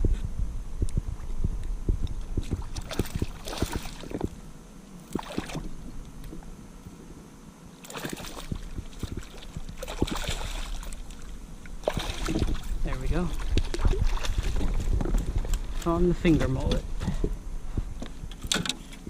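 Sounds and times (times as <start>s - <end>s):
water splashing: 2.2s - 4.4s, 5.0s - 6.5s, 7.8s - 16.1s.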